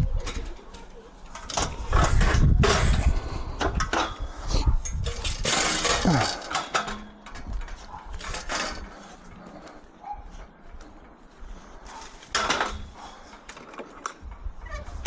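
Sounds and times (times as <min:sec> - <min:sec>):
metal bed frame clanking: 0:04.9 - 0:09.3.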